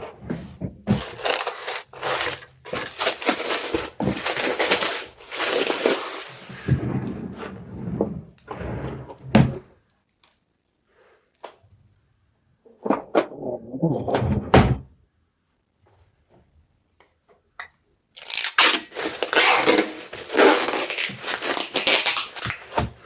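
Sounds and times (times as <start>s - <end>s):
packing materials rustling: 0.9s - 6.5s, 18.2s - 23.0s.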